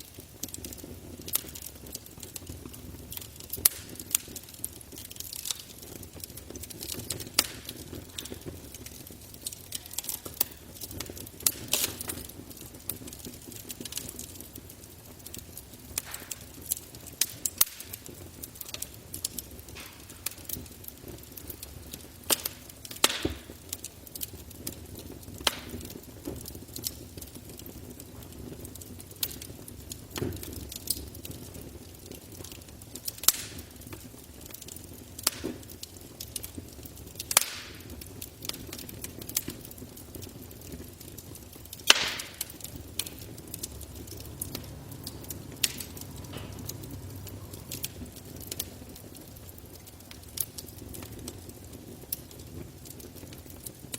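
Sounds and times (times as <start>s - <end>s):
campfire crackling and popping: 0.0s - 53.9s.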